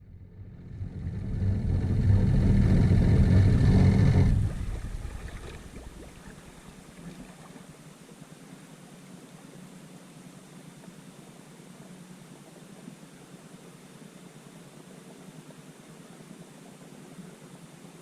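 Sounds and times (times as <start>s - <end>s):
watercraft engine running hard: 0.3s - 6.8s.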